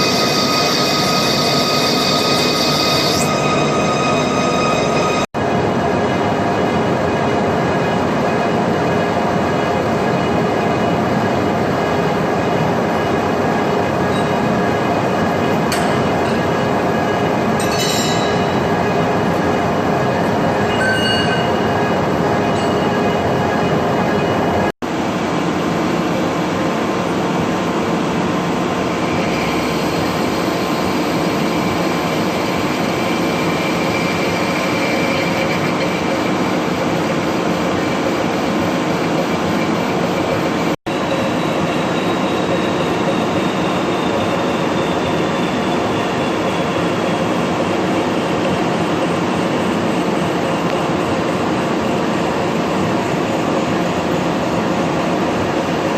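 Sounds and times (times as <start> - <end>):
cutting tool squealing: 0.0 - 5.3, 33.0 - 36.3
metal lathe running: 0.0 - 24.7, 28.8 - 55.9.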